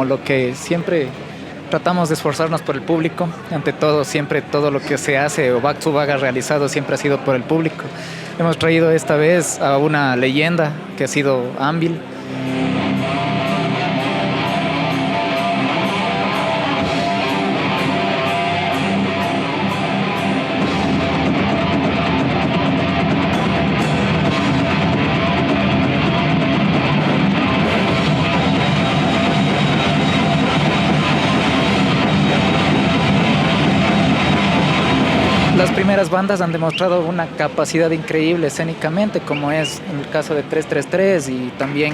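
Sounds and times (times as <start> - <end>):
heavy metal band playing: 12.2 - 36.2.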